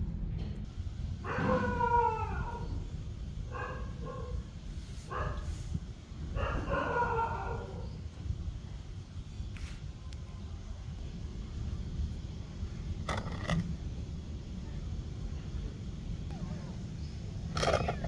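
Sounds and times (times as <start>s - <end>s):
pet animal crying: 1.2s - 2.8s, 16.3s - 18.0s.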